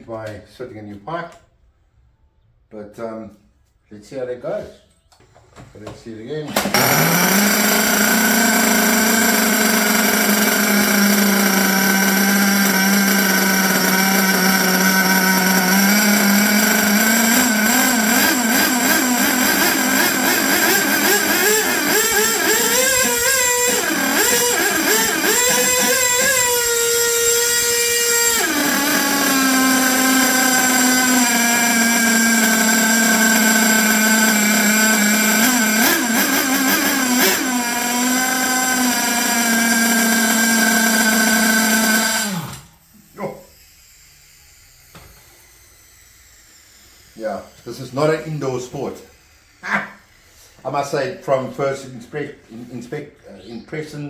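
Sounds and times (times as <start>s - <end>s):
nitro engine idling and revving: 6.6s - 42.4s.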